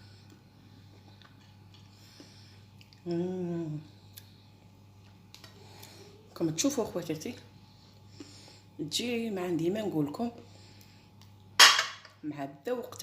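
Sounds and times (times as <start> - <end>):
faint steady hum: 0.0 - 13.0
woman humming: 3.0 - 3.9.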